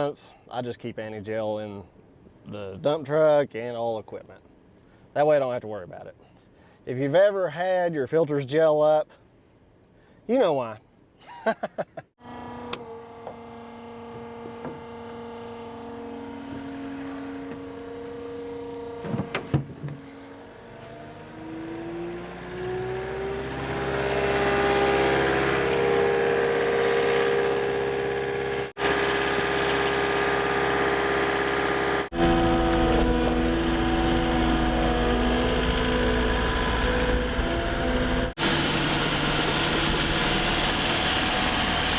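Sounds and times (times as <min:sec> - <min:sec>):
diesel engine idling and revving: 0:12.2 - 0:41.9.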